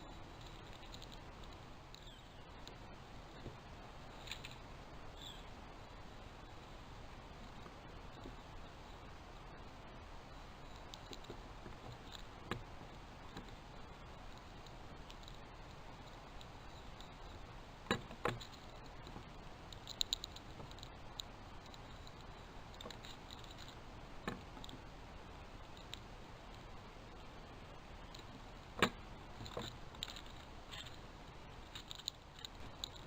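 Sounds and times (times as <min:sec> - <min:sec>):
small ticks: 0:00.0 - 0:33.0
steady hiss: 0:00.0 - 0:33.0
sharp clicks and knocks: 0:17.8 - 0:24.9, 0:28.1 - 0:31.0.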